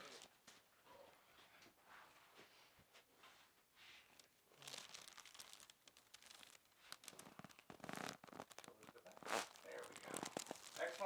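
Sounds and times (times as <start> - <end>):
crinkling and rustling on table: 2.4 - 11.0.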